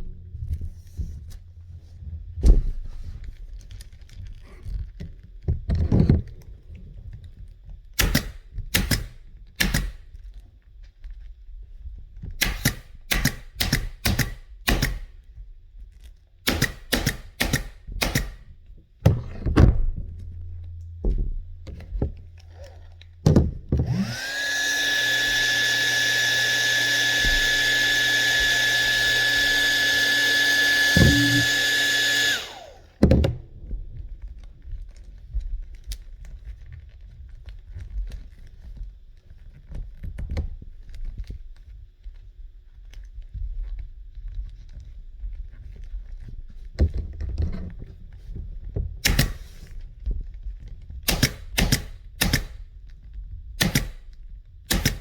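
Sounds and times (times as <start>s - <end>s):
pneumatic stapler firing: 8.0s - 10.0s, 12.4s - 15.1s, 16.4s - 18.5s, 23.8s - 33.3s, 49.0s - 49.6s, 51.1s - 52.6s, 53.6s - 54.1s, 54.7s - 55.0s
motor-driven blower whining: 20.7s - 33.0s.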